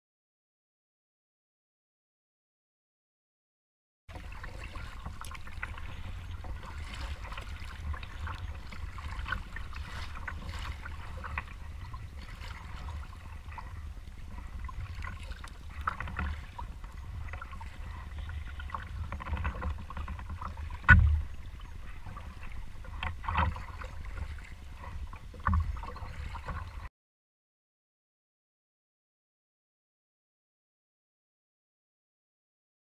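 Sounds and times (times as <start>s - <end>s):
paddle dipping and dripping water: 4.1s - 26.9s.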